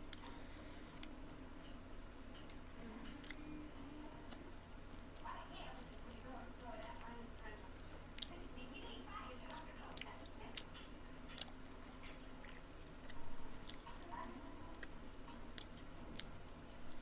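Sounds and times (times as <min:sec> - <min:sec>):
person chewing food: 0:00.0 - 0:08.4, 0:09.2 - 0:17.0.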